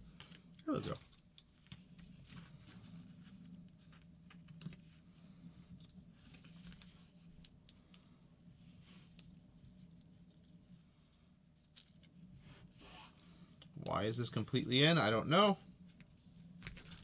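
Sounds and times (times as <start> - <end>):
low steady hum: 0.0 - 17.0
light clicks and taps of parts: 3.6 - 5.0, 5.6 - 8.1.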